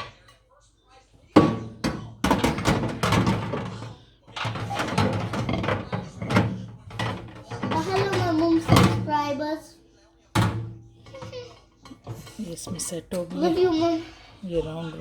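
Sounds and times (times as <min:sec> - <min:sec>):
knocks and clatter of turntable parts: 0:01.4 - 0:09.1.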